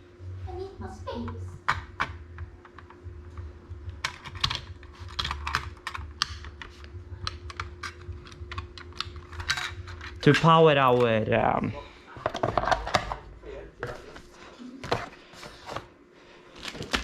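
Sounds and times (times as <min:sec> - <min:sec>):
faint electrical hum: 0:00.0 - 0:17.0.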